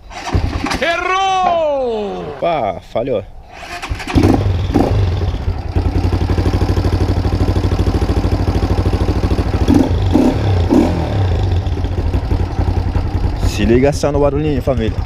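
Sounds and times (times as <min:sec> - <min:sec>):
motorcycle engine idling: 0:03.8 - 0:15.0.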